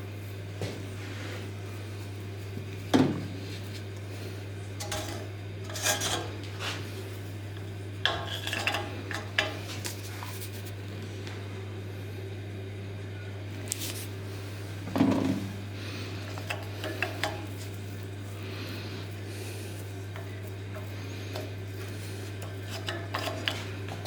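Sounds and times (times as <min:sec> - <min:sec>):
steady low hum: 0:00.0 - 0:24.0
metal tools clattering on workbench: 0:04.8 - 0:06.3.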